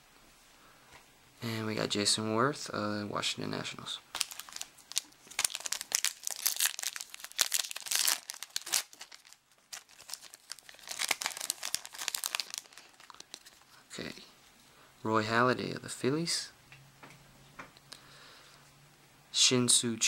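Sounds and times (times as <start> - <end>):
foil wrapper crinkling: 4.1 - 13.8.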